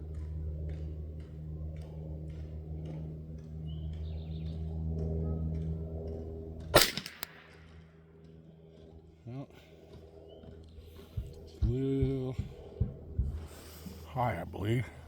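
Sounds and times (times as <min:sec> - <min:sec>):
steady low hum: 0:00.0 - 0:15.0
rifle shot crack: 0:06.7 - 0:07.6
faint echo crack: 0:06.8 - 0:07.8.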